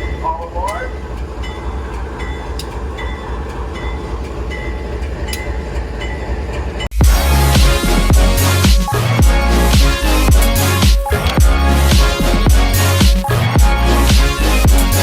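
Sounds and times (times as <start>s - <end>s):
train wheels clicking on rail joints: 0.0s - 6.9s
freight train rumbling past: 0.0s - 15.0s
loud electronic music: 7.0s - 15.0s.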